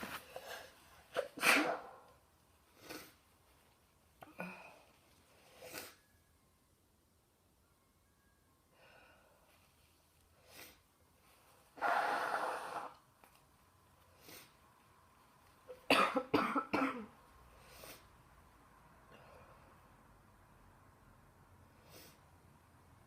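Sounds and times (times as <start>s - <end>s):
woman coughing: 15.9s - 17.1s.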